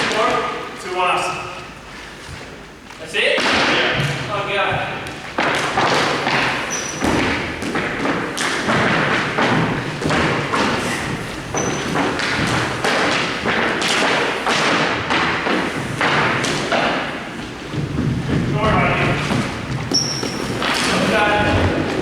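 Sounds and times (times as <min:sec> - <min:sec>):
rapid thuds and knocks: 0:04.7 - 0:22.0.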